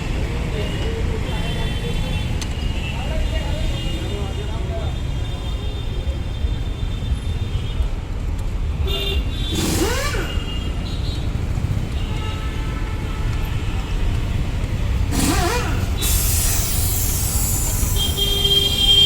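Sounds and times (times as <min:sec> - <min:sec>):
passing vehicles rumble: 0:00.0 - 0:19.0
hissing air burst: 0:15.1 - 0:18.5.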